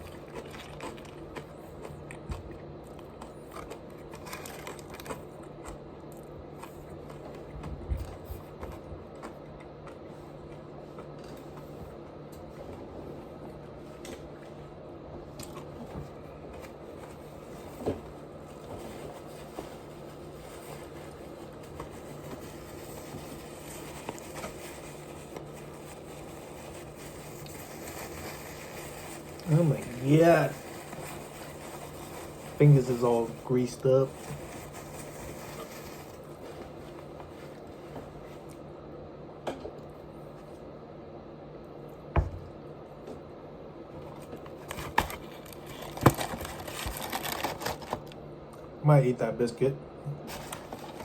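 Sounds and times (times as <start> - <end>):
chewing crunchy food: 0.0 - 11.8, 15.2 - 17.5
steady low hum: 0.0 - 51.0.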